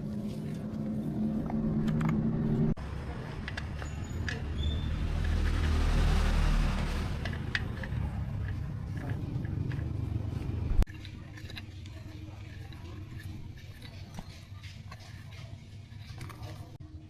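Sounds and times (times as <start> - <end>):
low rumble: 0.0 - 10.9
engine humming: 0.0 - 16.8.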